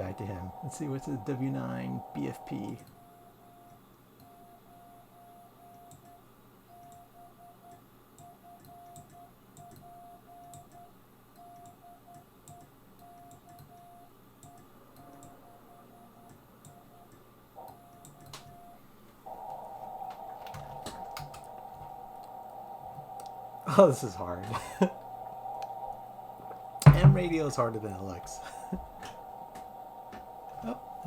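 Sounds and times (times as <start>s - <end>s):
loud steady tone: 0.0s - 31.0s
morse code tone: 6.7s - 18.8s
faint clicks: 19.4s - 23.4s, 25.2s - 25.8s.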